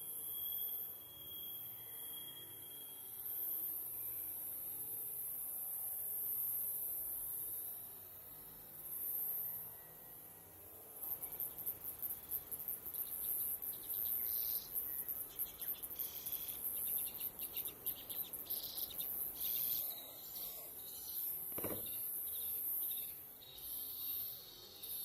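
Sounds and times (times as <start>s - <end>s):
insects shrilling: 11.1s - 25.0s
dull knock: 21.5s - 22.0s.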